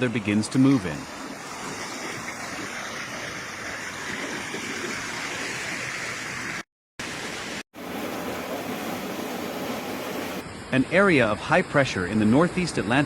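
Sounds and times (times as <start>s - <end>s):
floodwater rushing: 0.0s - 10.4s.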